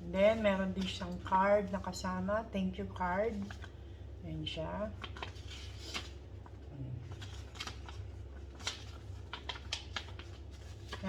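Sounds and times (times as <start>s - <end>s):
steady low hum: 0.0s - 11.0s
paper packaging handled: 4.9s - 11.0s.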